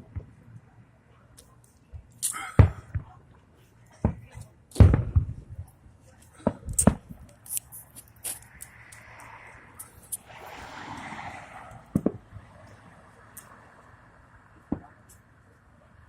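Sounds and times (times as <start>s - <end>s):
fireworks booming: 2.4s - 3.1s, 4.0s - 5.5s
fireworks snapping: 6.4s - 9.3s.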